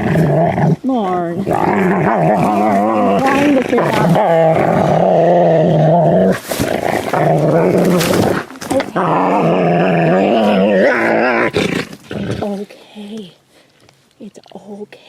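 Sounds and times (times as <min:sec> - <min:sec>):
dog growling: 0:00.0 - 0:12.6.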